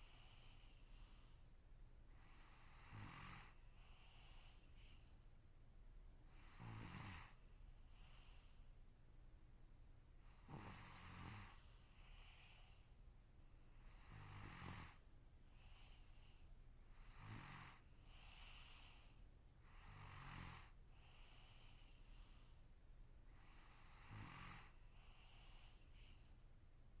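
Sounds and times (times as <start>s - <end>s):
low rattling snores: 2.5s - 4.1s, 6.4s - 7.4s, 10.4s - 11.6s, 13.9s - 15.0s, 17.0s - 18.6s, 19.7s - 20.8s, 23.5s - 25.5s.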